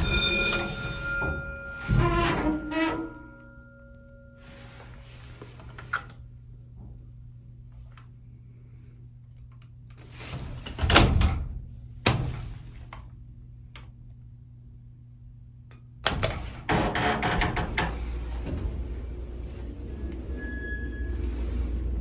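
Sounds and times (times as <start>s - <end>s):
rattling and knocks: 0.0s - 4.0s
elevator doors sliding: 0.0s - 6.2s, 10.0s - 12.9s, 16.1s - 22.0s
steady low hum: 0.0s - 22.0s.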